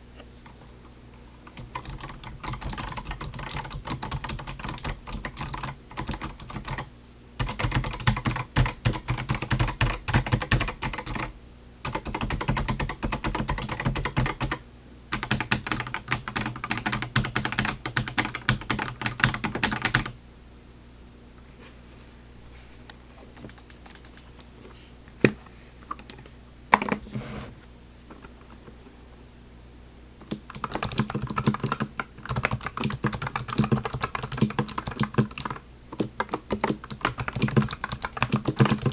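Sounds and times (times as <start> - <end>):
clicky mechanical keyboard typing: 1.5 - 20.2, 23.4 - 24.3, 30.2 - 38.9.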